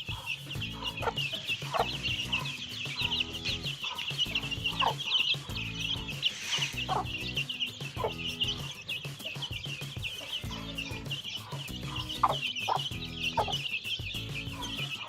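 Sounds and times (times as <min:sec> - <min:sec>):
chicks peeping: 0:00.0 - 0:15.0
hen clucking: 0:00.0 - 0:15.0.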